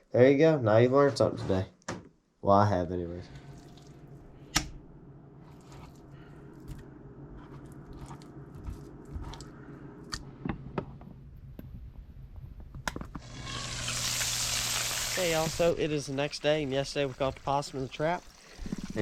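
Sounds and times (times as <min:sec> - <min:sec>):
low steady hum: 0:02.7 - 0:19.0
meat sizzling in a pan: 0:13.2 - 0:19.0.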